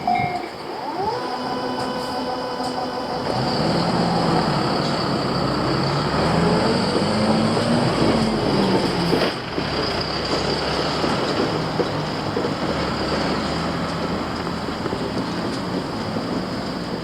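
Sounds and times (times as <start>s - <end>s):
low electric motor whine: 0.0s - 6.0s
train wheels rumbling on rails: 0.0s - 17.0s.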